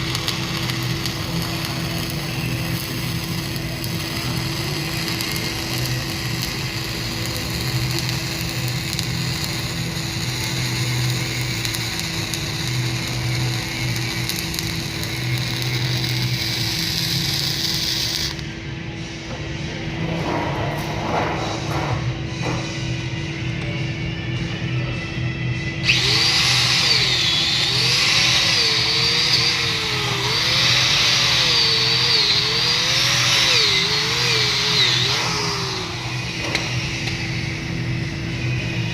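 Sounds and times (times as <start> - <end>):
arc welding crackling hiss: 0.0 - 18.5, 25.8 - 37.4.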